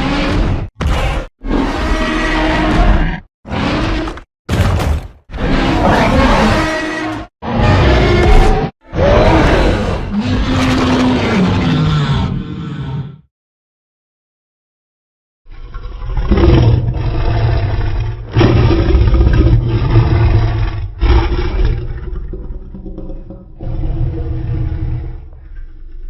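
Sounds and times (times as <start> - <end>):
deep monster roars: 5.3 - 13.3, 15.8 - 22.7, 23.4 - 26.0.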